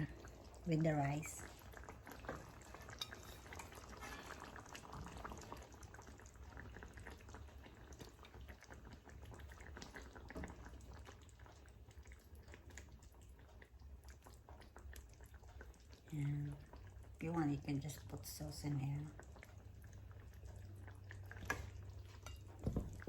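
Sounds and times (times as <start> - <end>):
spoon clinking and scraping: 2.9 - 4.4.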